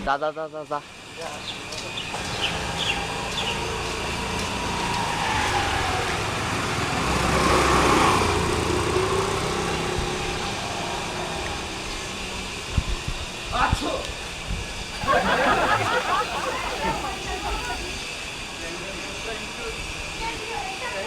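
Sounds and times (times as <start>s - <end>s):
motor vehicle passing: 15.0s - 18.0s.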